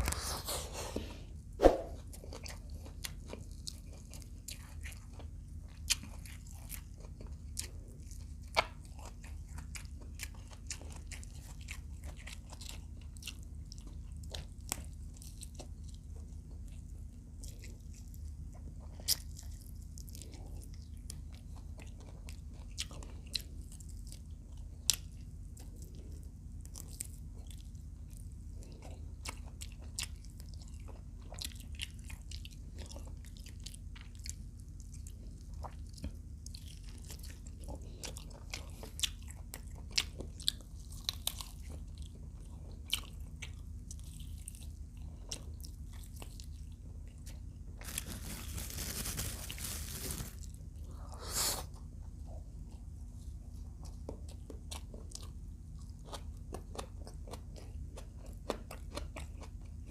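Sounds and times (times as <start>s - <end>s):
steady low hum: 0.0s - 59.9s
wet chewing: 2.1s - 59.9s
crunching and biting: 28.6s - 51.6s.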